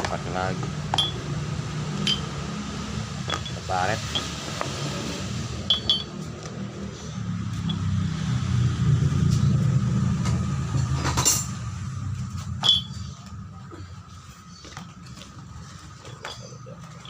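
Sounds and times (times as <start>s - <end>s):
metal compressor parts clinking: 0.9s - 1.2s, 2.0s - 2.4s, 3.3s - 4.3s, 5.6s - 6.3s, 7.6s - 7.9s, 12.6s - 13.2s, 16.0s - 17.0s.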